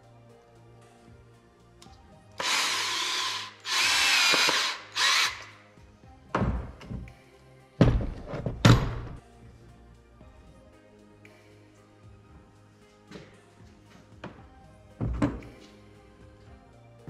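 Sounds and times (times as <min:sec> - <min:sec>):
power drill running: 0:02.4 - 0:05.5
heavy knocks and thumps: 0:07.8 - 0:09.2, 0:15.0 - 0:15.5.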